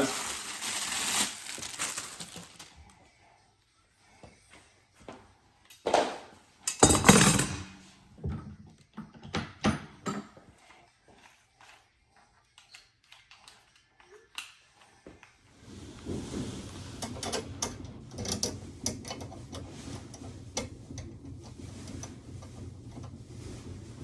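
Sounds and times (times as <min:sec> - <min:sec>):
rustling scrapes: 0:00.0 - 0:02.8, 0:15.6 - 0:24.0.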